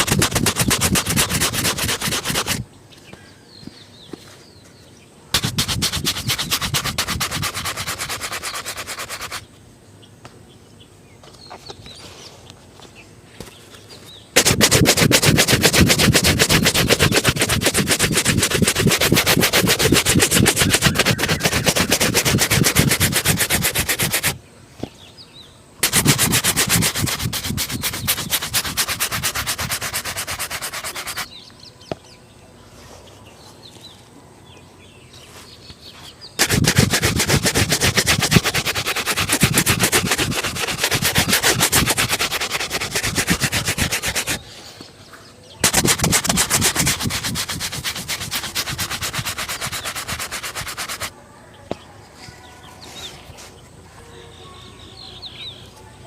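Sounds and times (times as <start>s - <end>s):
shoe buffing strokes: 0.0s - 2.6s, 5.4s - 9.5s, 14.4s - 24.4s, 25.8s - 31.3s, 36.4s - 44.4s, 45.6s - 51.1s.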